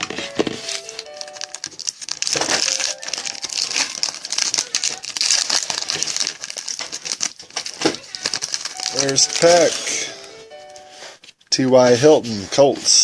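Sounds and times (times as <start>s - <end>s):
plastic wrapping crinkling and tearing: 0.0s - 10.2s.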